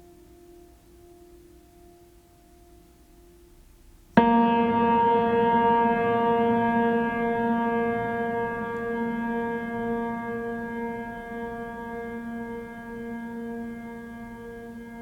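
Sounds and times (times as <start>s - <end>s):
sustained pitched tone: 4.2s - 15.0s.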